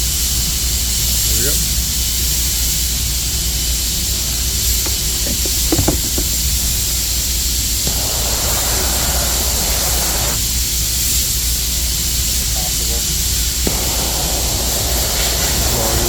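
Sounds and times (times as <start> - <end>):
gas torch hissing: 0.0 - 16.0
light knocks: 4.8 - 6.7.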